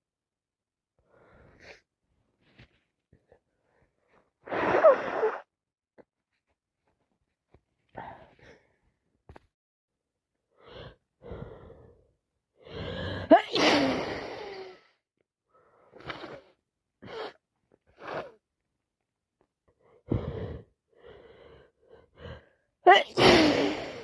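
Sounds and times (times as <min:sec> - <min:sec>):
person sneezing: 0:13.3 - 0:14.8, 0:22.9 - 0:24.0.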